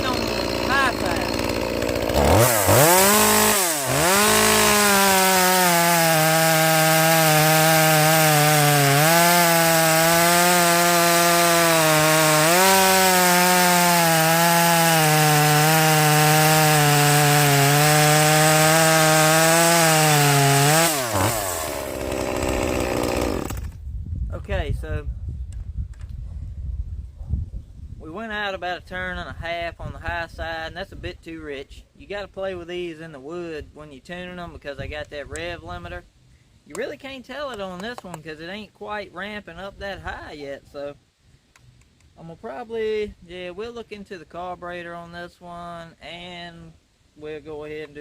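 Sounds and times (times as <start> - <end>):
chainsaw revving under load: 0.0 - 23.8.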